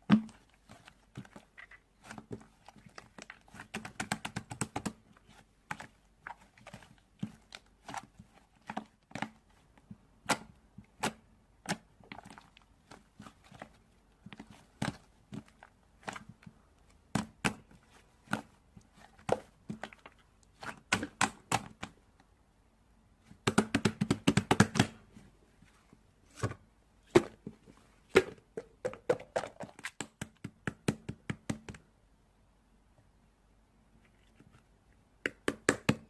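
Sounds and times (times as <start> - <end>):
irregular taps and clicks: 35.2 - 36.0.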